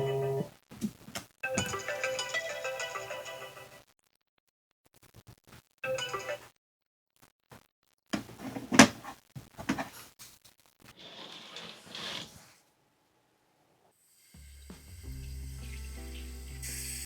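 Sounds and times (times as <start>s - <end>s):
household objects knocking and clattering: 8.2s - 9.9s.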